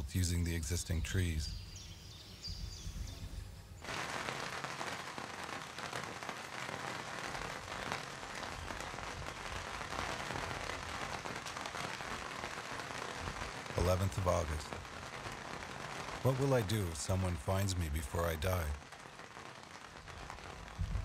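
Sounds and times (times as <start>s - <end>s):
rain pattering: 3.8s - 21.0s.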